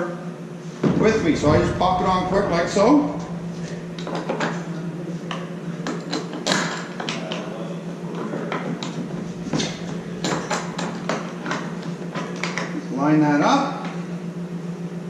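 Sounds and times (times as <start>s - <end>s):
steady low hum: 0.6s - 5.9s, 7.9s - 12.9s.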